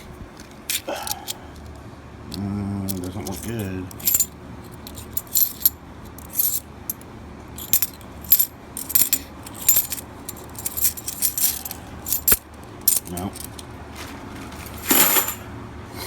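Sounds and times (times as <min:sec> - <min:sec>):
coins clinking: 0:00.7 - 0:01.7, 0:02.9 - 0:07.0, 0:07.6 - 0:13.7, 0:14.6 - 0:15.4.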